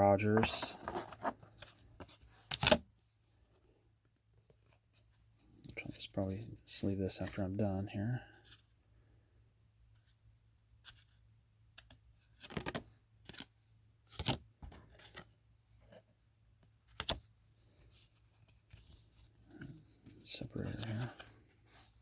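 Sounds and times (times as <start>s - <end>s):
cards and plastic packaging rustling: 0.0s - 2.8s, 16.9s - 22.0s.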